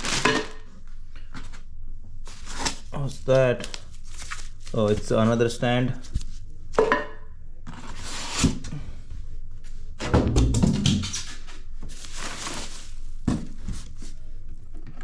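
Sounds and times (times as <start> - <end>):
packaging rustling: 0.0 - 0.6, 2.3 - 5.3
dull thunks of parts: 10.0 - 11.2.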